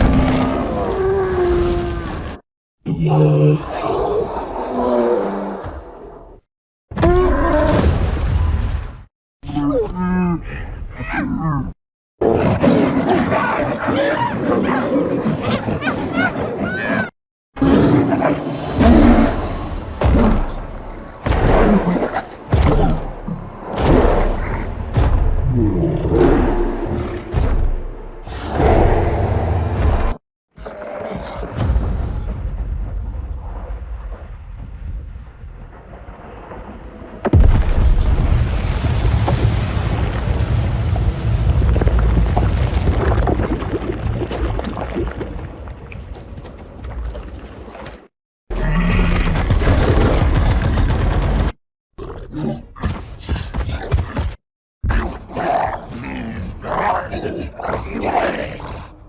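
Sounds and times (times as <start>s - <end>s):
giant apes roaring: 0.0s - 6.2s, 9.6s - 24.7s, 25.4s - 27.4s, 54.9s - 59.0s
low monster rumble: 31.2s - 46.8s.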